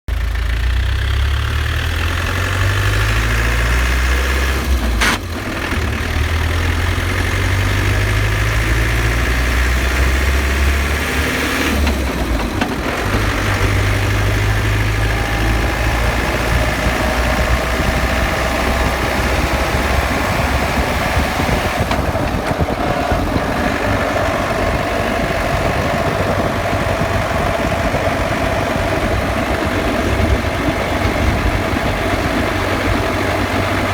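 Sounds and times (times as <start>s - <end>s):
vehicle engine low rumble: 0.1s - 33.9s.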